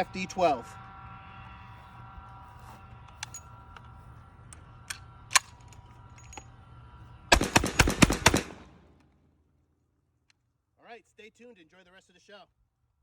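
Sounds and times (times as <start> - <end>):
rapid shotgun shots: 7.3 - 8.8.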